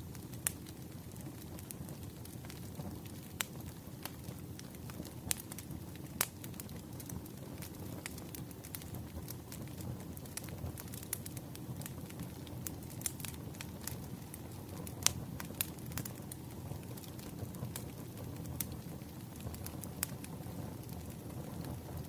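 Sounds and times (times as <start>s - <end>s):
fire crackles and pops: 0.0s - 22.0s
fire rumbling: 0.0s - 22.0s.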